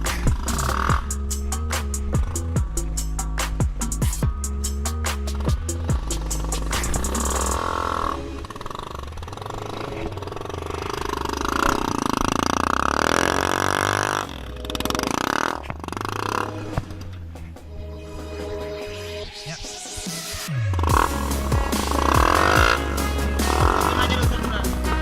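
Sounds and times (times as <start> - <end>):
background music with bass line: 0.0 - 8.5, 16.2 - 25.0
motorcycle engine revving: 0.0 - 18.6, 20.4 - 25.0.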